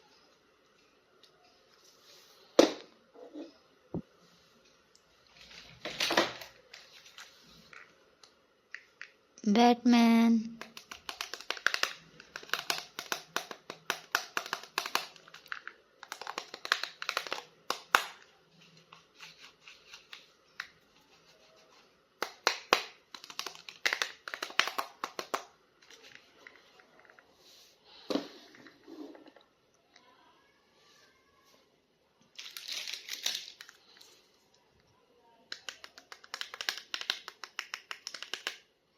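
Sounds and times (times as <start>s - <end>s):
plastic packaging crinkling and tearing: 10.7s - 20.2s, 32.4s - 34.1s.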